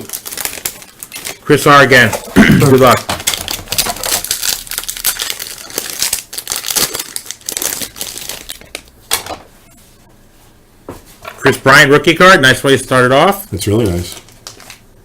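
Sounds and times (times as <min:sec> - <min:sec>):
foil wrapper tearing and crinkling: 0:00.0 - 0:02.1, 0:02.7 - 0:08.9, 0:13.7 - 0:14.8.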